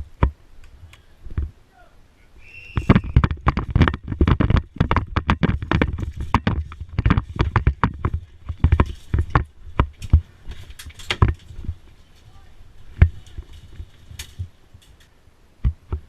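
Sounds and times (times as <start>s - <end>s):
heavy knocks and thumps: 2.8s - 11.9s, 15.6s - 16.0s.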